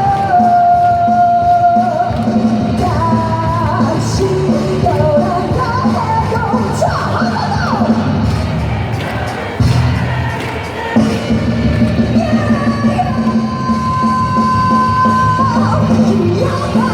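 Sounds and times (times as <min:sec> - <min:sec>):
drums and bass: 0:00.0 - 0:16.9
lead vocal singing: 0:00.0 - 0:16.9
live pop-rock song through speakers: 0:00.0 - 0:16.9.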